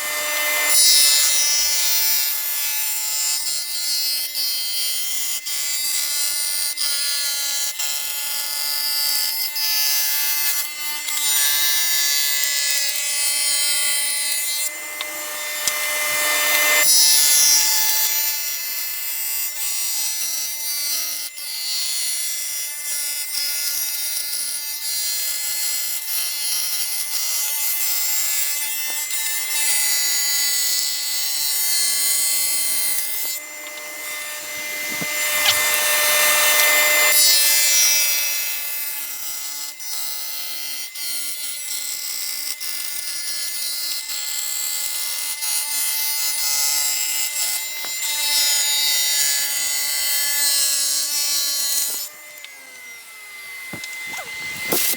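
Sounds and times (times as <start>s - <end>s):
saw cutting wood hiss: 0.0s - 3.3s, 9.5s - 19.1s, 25.1s - 39.2s, 44.6s - 54.9s
table saw motor hum: 0.0s - 3.4s, 8.6s - 19.1s, 25.9s - 39.3s, 45.2s - 54.9s.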